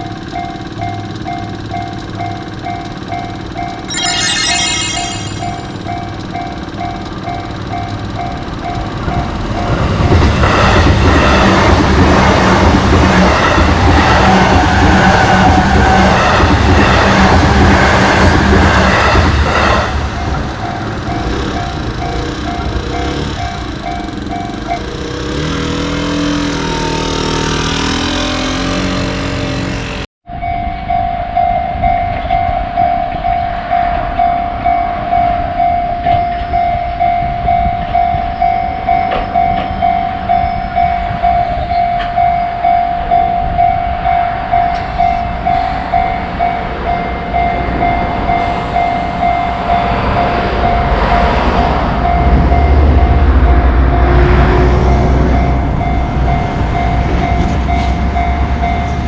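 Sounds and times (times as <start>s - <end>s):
level crossing bell ringing: 3.9s - 6.0s.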